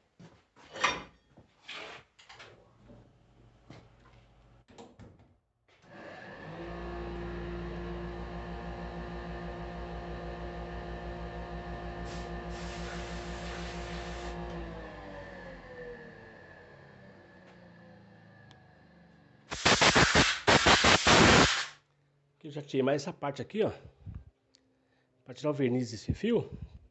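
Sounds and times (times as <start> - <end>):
electric tool motor running: 5.9 - 21.7.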